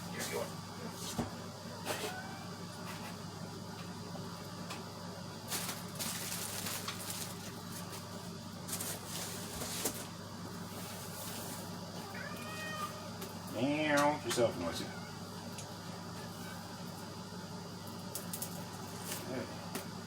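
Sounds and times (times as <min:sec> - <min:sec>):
rustling and handling noise: 0:05.4 - 0:12.9.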